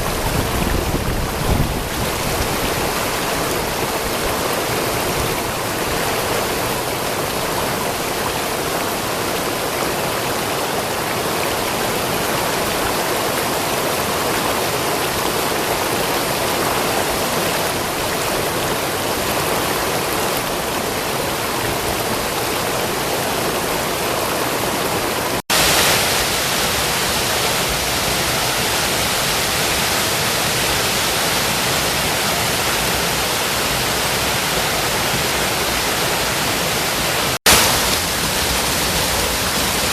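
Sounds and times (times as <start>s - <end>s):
brook rushing over stones: 25.5s - 39.9s.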